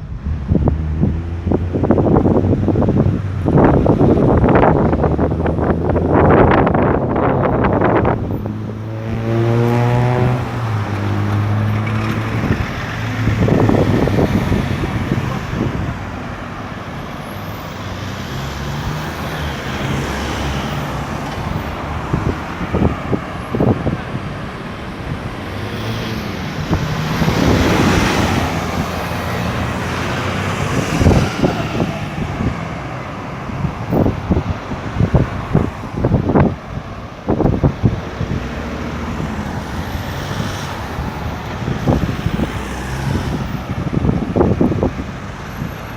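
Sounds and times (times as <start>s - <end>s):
cars and trucks driving past: 0.0s - 45.9s
wind buffeting microphone: 0.0s - 45.9s
engines revving up: 8.3s - 15.9s, 23.6s - 32.8s.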